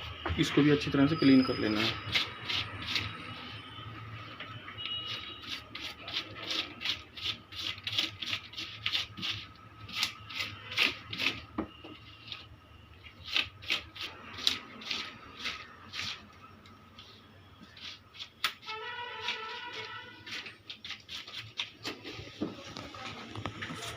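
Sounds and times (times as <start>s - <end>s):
brush scrubbing keyboard: 5.1s - 11.3s, 13.2s - 16.3s, 17.0s - 22.3s.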